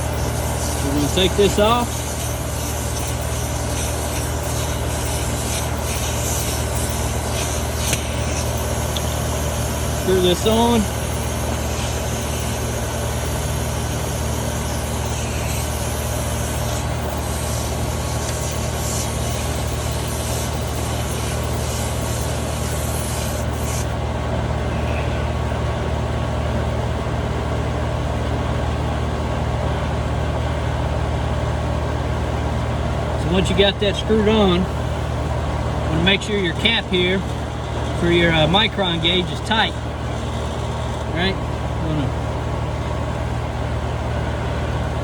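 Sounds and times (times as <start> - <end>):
hiss: 0.0 - 23.9
machine humming: 0.0 - 45.0.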